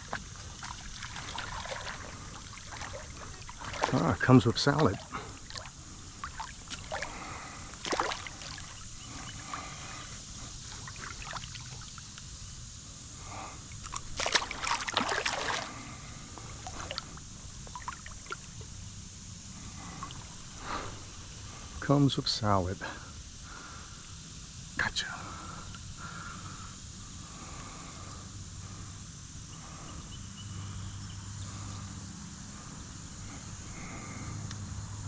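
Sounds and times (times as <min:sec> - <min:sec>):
water splashing: 0:00.0 - 0:09.6, 0:10.7 - 0:12.0, 0:13.7 - 0:18.7
creek water trickling: 0:00.0 - 0:12.4, 0:13.6 - 0:21.7.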